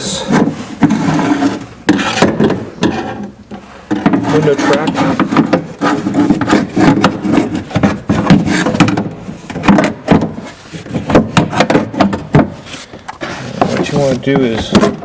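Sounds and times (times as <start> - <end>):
rubbing: 0.0 - 15.0
window track knocking and rattling: 11.0 - 12.6.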